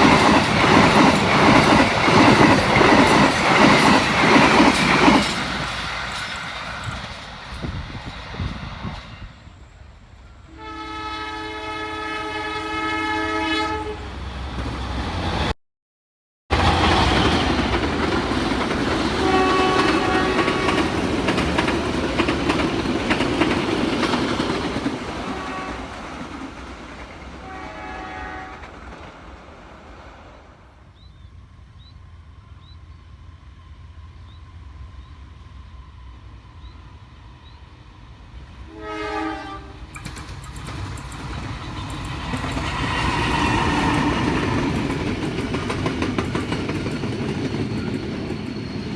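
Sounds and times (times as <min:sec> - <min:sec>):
train rumble and wheel clatter: 0:00.0 - 0:15.6, 0:16.5 - 0:48.9
train horn: 0:10.4 - 0:14.2, 0:18.9 - 0:21.2, 0:25.2 - 0:26.3, 0:27.4 - 0:28.8, 0:38.6 - 0:40.0, 0:42.7 - 0:44.7.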